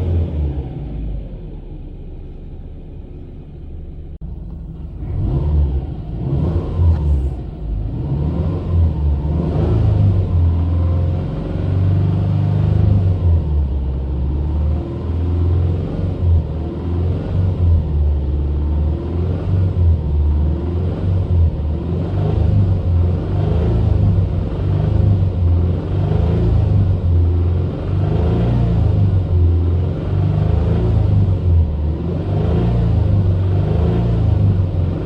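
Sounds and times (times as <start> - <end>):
car engine rumbling: 0.0 - 35.0.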